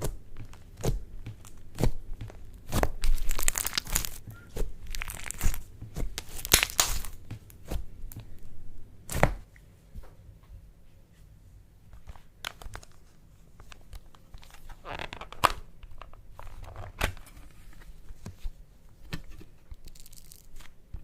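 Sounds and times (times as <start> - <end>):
slime crackling and popping: 0.0 - 7.8, 19.8 - 20.6.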